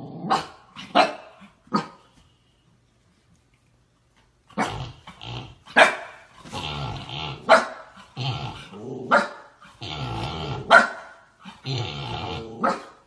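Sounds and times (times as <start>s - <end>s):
dog growling: 0.0s - 1.0s, 4.5s - 5.8s, 6.4s - 13.0s
dog barking: 0.3s - 2.0s, 5.7s - 6.2s, 7.5s - 7.9s, 9.1s - 9.5s, 10.7s - 11.2s, 12.6s - 13.0s.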